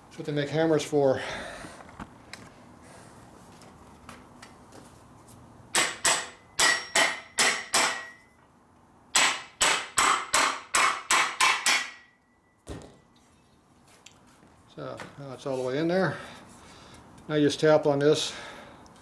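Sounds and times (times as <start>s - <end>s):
hammer ringing on steel: 5.8s - 8.3s.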